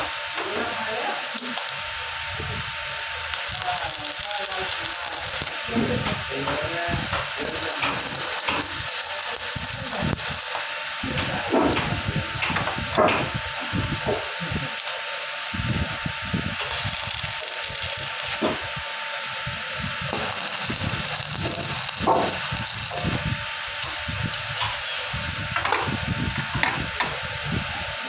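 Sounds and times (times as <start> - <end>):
arc welding crackling hiss: 0.0 - 0.4, 1.3 - 1.9, 3.2 - 5.7, 7.3 - 11.2, 13.4 - 15.1, 16.5 - 18.6, 20.1 - 25.2.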